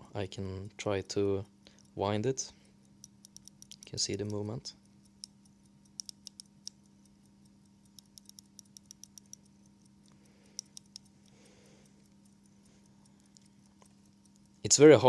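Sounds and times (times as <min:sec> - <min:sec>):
low steady hum: 0:00.0 - 0:15.0
watch crown ratcheting clicks: 0:00.4 - 0:15.0.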